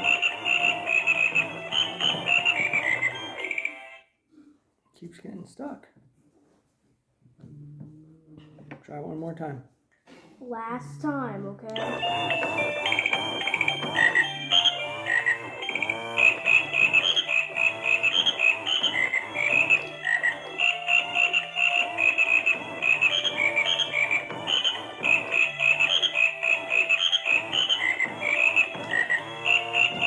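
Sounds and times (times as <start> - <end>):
toy motor buzzing: 0.0 - 3.9, 11.8 - 30.0
electronic croaks: 0.0 - 4.0, 11.8 - 30.0
toy electronic beeping tune: 0.0 - 4.0, 11.7 - 30.0.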